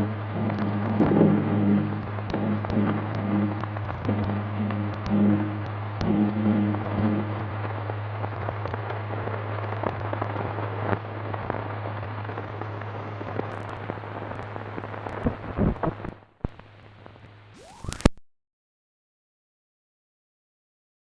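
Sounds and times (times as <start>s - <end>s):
crackles and pops: 2.0s - 6.2s, 6.8s - 18.2s
film soundtrack hiss: 7.0s - 18.2s.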